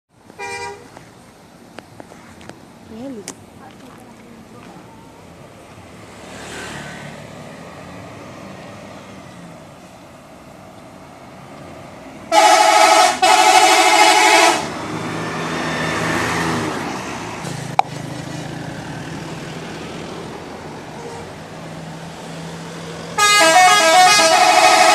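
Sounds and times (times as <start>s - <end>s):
engine and traffic noise: 0.1s - 24.9s
multi-tone musical bus horn: 0.4s - 0.9s, 12.3s - 14.7s, 21.0s - 21.4s, 23.2s - 24.9s.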